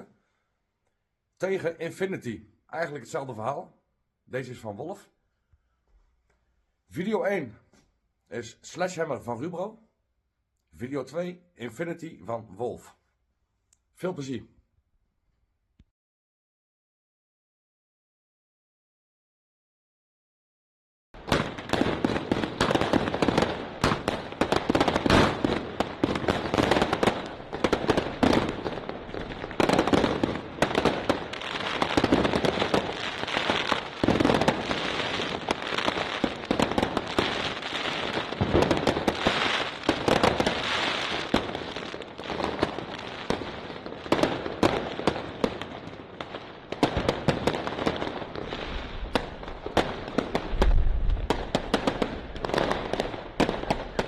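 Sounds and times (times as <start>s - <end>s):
fireworks crackling: 21.2s - 54.0s
fireworks rapid shots: 21.2s - 54.0s.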